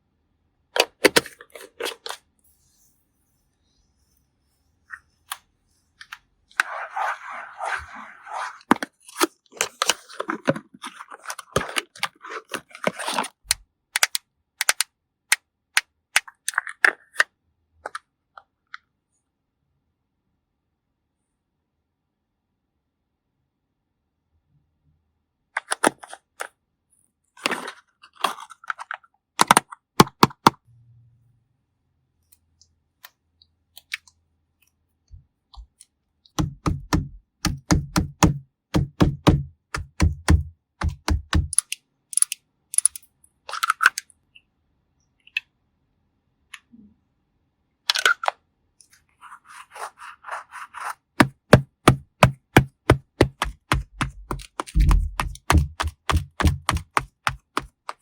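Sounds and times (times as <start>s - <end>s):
scratchy brushing: 6.6s - 9.0s, 49.2s - 51.3s, 52.9s - 58.0s
quick tapping: 36.4s - 41.6s, 51.2s - 58.0s.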